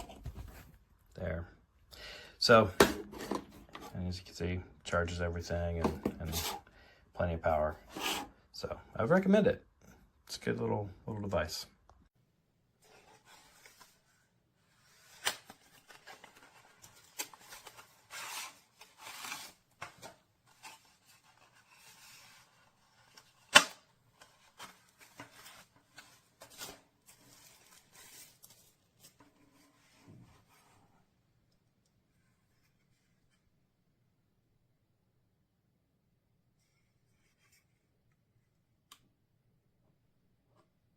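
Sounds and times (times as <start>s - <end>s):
handling rubbing and rustling: 0.0s - 1.0s, 2.6s - 4.0s, 5.7s - 6.7s, 7.5s - 8.4s, 12.8s - 31.2s.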